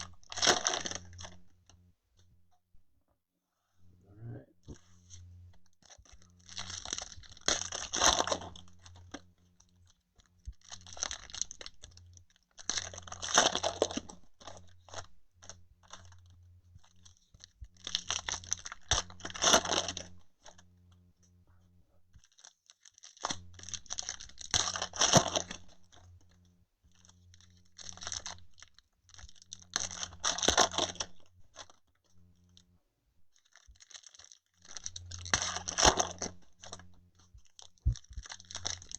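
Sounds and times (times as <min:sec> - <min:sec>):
wrappers tearing and crinkling: 0:00.0 - 0:01.4, 0:05.8 - 0:20.6, 0:22.2 - 0:26.1, 0:27.0 - 0:31.8, 0:33.3 - 0:38.9.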